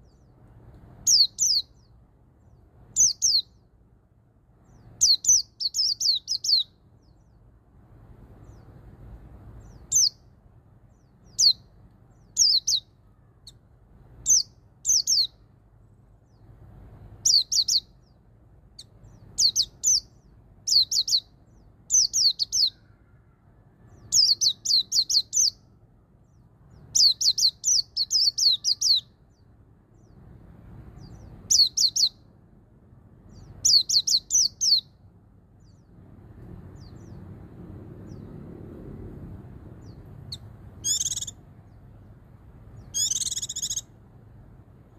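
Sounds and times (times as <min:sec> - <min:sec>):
bird singing high sweeping notes: 0:39.8 - 0:41.4, 0:42.8 - 0:43.9.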